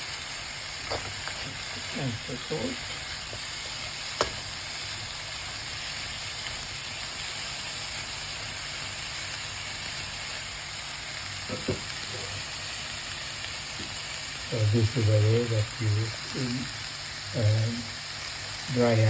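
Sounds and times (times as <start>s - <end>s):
mushrooms sizzling in a hot pan: 0.0s - 19.0s
sharp tap: 4.2s - 4.4s.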